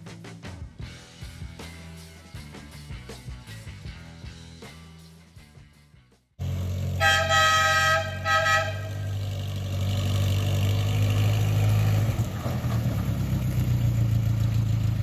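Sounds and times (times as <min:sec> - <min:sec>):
engine idling: 0:06.4 - 0:15.0
air horn blasts: 0:06.9 - 0:09.2.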